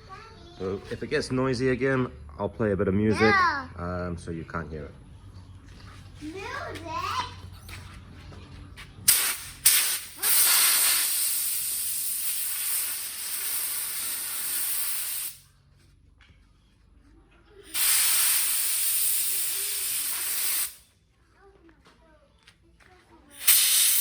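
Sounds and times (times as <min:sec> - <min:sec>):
compressed air blow gun hissing: 0:09.1 - 0:15.5, 0:17.7 - 0:20.8, 0:23.3 - 0:24.0.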